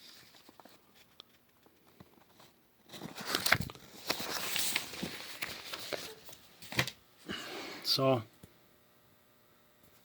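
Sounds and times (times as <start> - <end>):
paper rustling and crinkling: 0.0 - 7.0.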